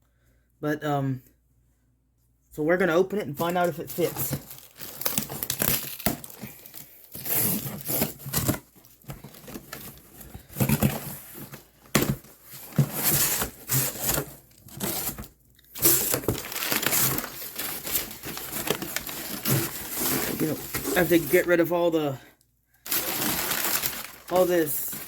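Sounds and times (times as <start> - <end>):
packing material crinkling: 3.4 - 21.7, 22.8 - 25.0
cardboard box tearing: 4.0 - 21.5, 22.9 - 25.0.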